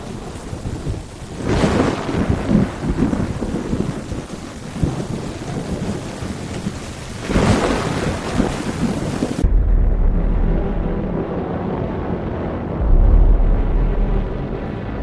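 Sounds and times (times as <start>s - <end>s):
heavy rain pouring: 0.0s - 15.0s
thunder rumbling: 0.0s - 15.0s
deep steady low rumble: 9.4s - 15.0s.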